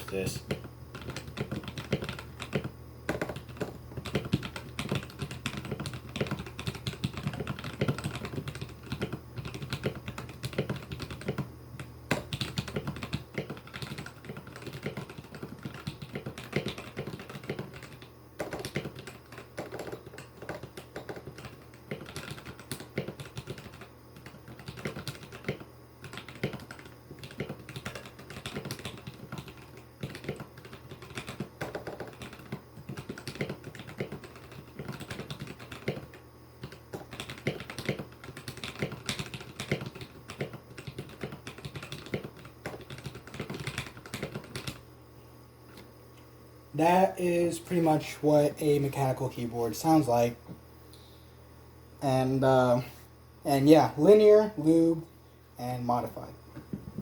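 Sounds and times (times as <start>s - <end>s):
fast mechanical keyboard typing: 0.0s - 44.8s.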